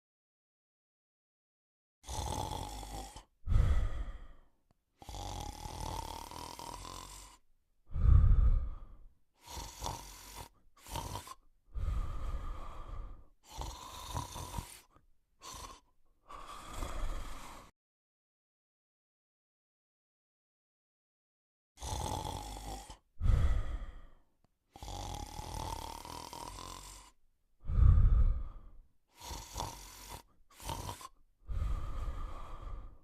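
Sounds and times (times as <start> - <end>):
dog snoring with faint whistle: 2.0 - 3.3, 5.0 - 7.4, 9.4 - 11.4, 13.5 - 15.8, 21.8 - 23.0, 24.8 - 27.1, 29.2 - 32.0.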